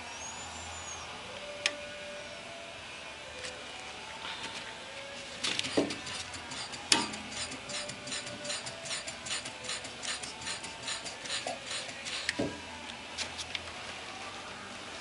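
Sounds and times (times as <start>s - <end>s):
parking brake ratchet clicking: 5.4s - 12.4s.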